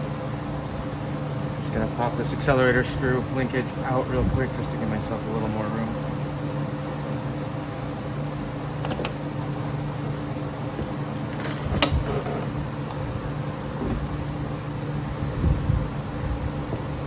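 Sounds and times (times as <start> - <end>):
mechanical hum: 0.0 - 17.0.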